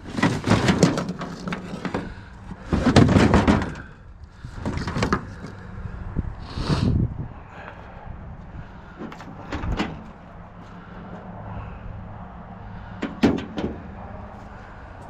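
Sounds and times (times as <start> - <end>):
knocks and clunks: 0.0 - 5.6, 8.9 - 10.3, 12.9 - 14.0.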